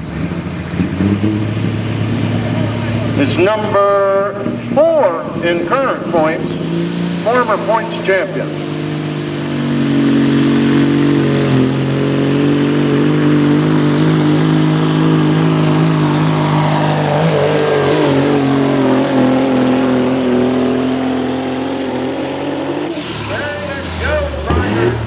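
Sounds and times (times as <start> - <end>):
diesel truck engine under load: 0.0 - 25.0
turbocharger whistle: 7.2 - 25.0.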